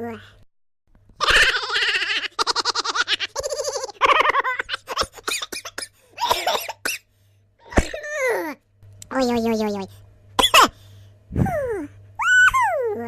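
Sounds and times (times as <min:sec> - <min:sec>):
comic laugh sound effects: 0:01.2 - 0:06.5.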